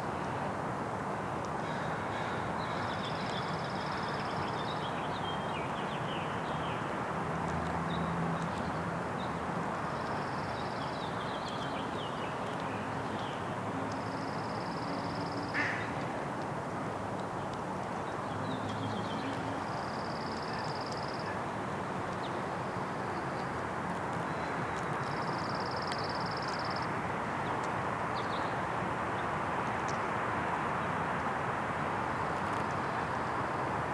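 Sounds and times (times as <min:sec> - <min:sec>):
distant traffic hum: 0:00.0 - 0:33.9
crow soft hiccup-like calls: 0:15.5 - 0:16.0.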